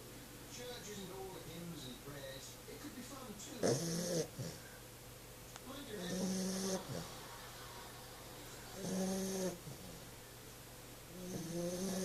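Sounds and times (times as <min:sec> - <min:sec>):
puppy snoring: 0:03.6 - 0:04.8, 0:05.9 - 0:07.2, 0:08.6 - 0:10.1, 0:11.1 - 0:12.0.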